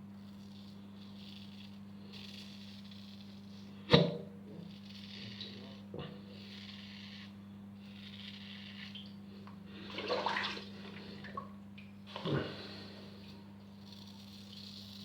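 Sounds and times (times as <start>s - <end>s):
razor scraping stubble: 0.0s - 9.0s, 13.2s - 15.0s.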